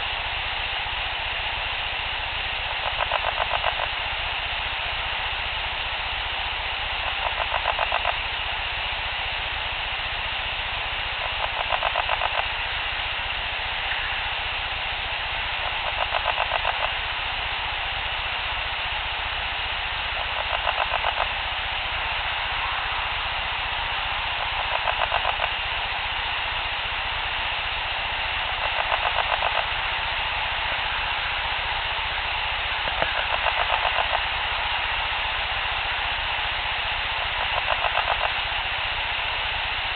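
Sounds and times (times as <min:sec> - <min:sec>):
steady high hiss: 0:00.0 - 0:39.9
raspy pulsed animal call: 0:11.2 - 0:12.4, 0:15.6 - 0:16.9, 0:20.2 - 0:21.3, 0:24.6 - 0:25.5, 0:28.6 - 0:29.7, 0:32.9 - 0:34.2.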